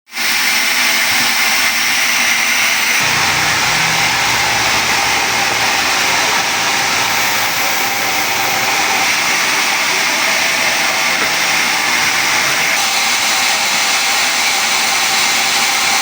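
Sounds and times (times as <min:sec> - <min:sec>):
power tool whining: 0:00.2 - 0:16.0
low hum: 0:03.0 - 0:09.1.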